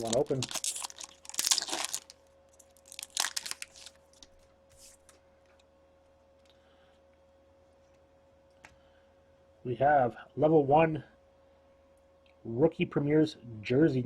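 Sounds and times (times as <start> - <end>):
wrapper tearing and crinkling: 0.0 - 4.3.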